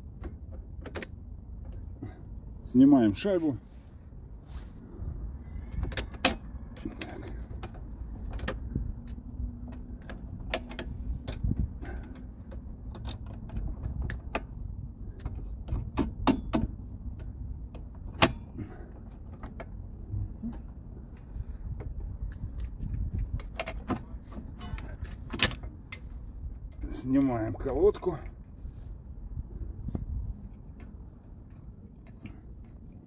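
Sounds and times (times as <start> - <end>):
low rumble: 28.2 - 33.0.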